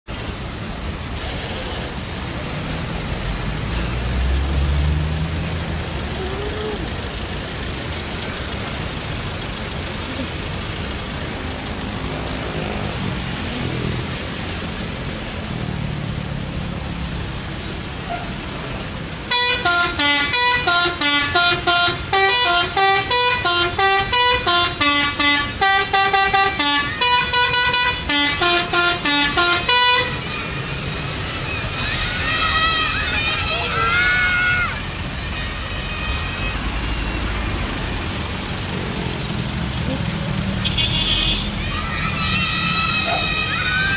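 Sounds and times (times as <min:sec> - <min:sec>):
vehicle engine and traffic rumble: 0:00.0 - 0:43.9
multi-tone air horn melody: 0:19.3 - 0:30.3.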